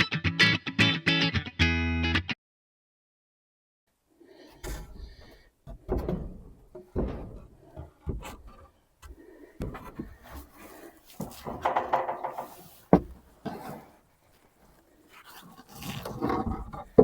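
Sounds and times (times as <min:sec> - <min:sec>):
knocks and thuds: 0:04.6 - 0:08.7, 0:11.2 - 0:13.3.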